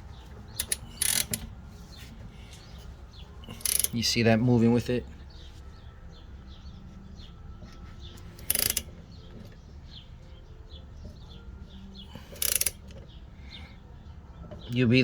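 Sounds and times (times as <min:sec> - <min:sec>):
ratchet wrench clicking: 0:00.2 - 0:02.8, 0:03.4 - 0:04.2, 0:08.1 - 0:09.5, 0:12.0 - 0:13.1.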